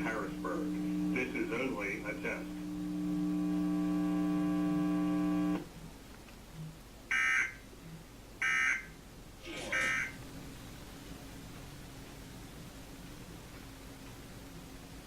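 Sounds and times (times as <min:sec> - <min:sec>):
digital data bursts: 0:00.0 - 0:02.5
steady buzzing tone: 0:00.0 - 0:05.7.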